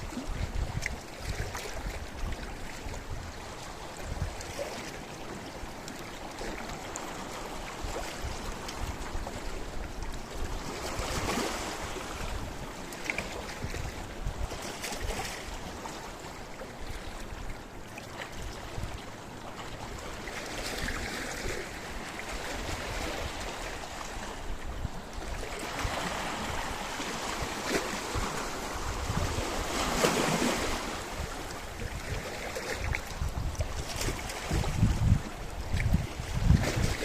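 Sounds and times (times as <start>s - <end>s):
wind rumble on microphone: 0.0s - 5.6s, 6.3s - 16.0s, 18.4s - 19.2s, 19.9s - 37.0s
waves washing over rocky shore: 10.5s - 17.4s, 19.2s - 37.0s.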